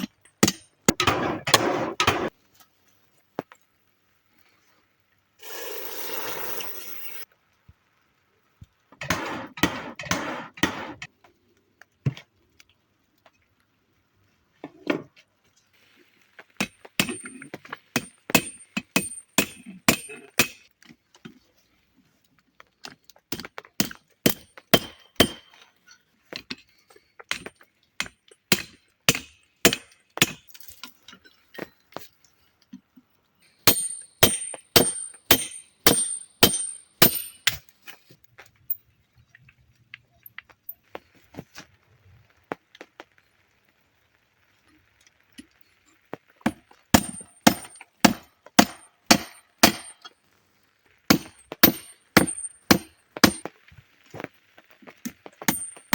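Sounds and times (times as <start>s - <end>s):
hammer striking metal: 18.0s - 20.6s, 33.7s - 37.6s, 46.5s - 50.0s, 51.1s - 53.5s.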